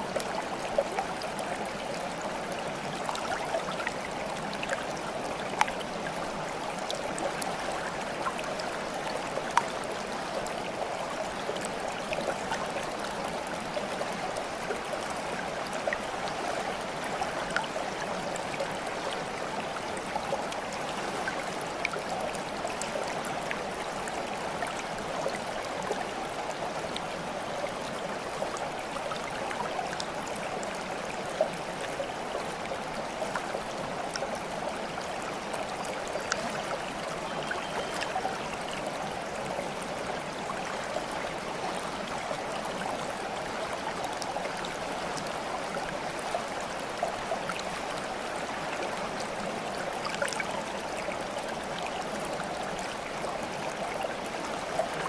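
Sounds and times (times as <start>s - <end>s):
stream babbling: 0.0s - 55.0s
water plinks and splashes: 35.6s - 38.9s, 49.9s - 50.7s.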